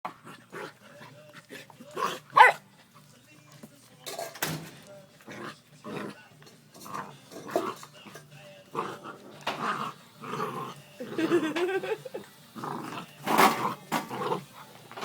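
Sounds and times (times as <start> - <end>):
puppies growling: 0.1 - 3.1, 5.2 - 15.0
puppies barking: 2.0 - 2.7.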